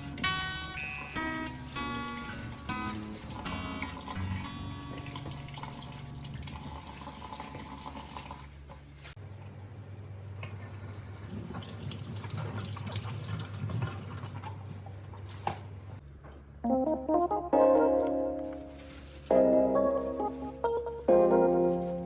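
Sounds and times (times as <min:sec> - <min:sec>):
tap water running into sink: 0:01.4 - 0:08.5, 0:10.7 - 0:14.4.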